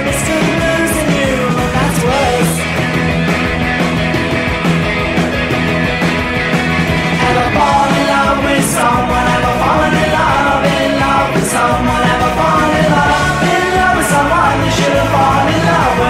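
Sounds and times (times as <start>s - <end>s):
sung vocals: 0.0s - 3.2s, 7.0s - 16.0s
punk rock band playing: 0.0s - 16.0s.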